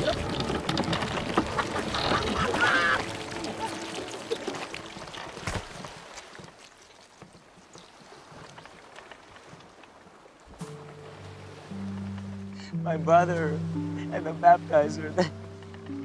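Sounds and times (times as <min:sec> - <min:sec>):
loud wavering cry: 0:02.0 - 0:03.1.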